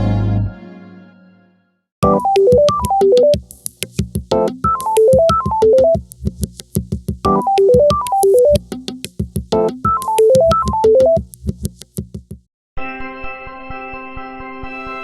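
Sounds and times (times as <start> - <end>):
synthesized keyboard melody: 0.0 - 3.4, 4.3 - 6.0, 7.3 - 8.6, 9.5 - 11.2
electronic drum beat: 2.0 - 12.5.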